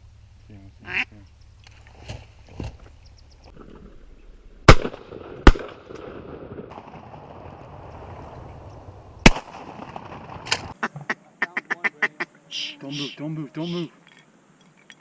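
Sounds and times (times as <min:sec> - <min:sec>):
shotgun shots: 0:04.7 - 0:07.4, 0:09.2 - 0:10.8.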